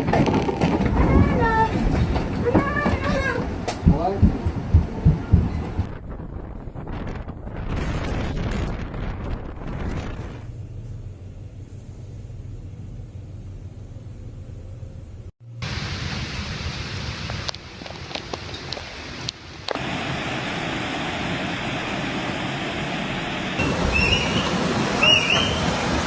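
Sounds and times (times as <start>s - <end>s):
wind rushing: 3.4s - 10.6s
rain: 15.4s - 26.0s.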